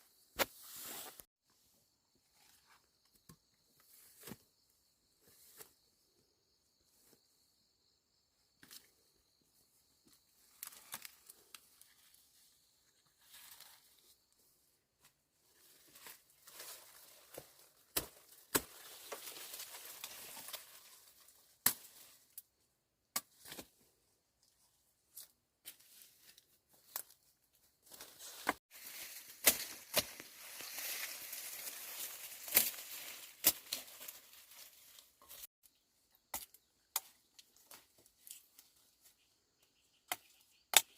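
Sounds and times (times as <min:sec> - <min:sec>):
leaves rustling and crinkling: 0:10.4 - 0:12.4, 0:13.0 - 0:14.3, 0:15.4 - 0:22.4, 0:25.7 - 0:35.5
stems snapping and tearing: 0:28.8 - 0:34.8.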